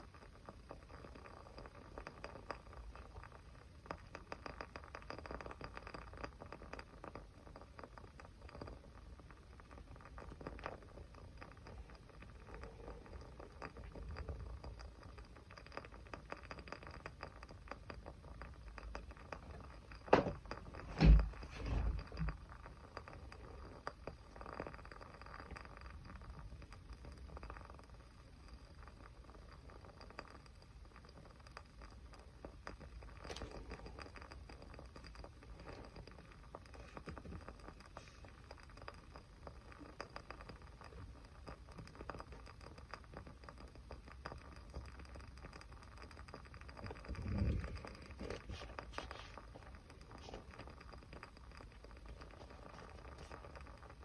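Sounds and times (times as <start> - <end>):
small fire crackling: 0.0 - 54.0
soft low thump: 20.1 - 22.4.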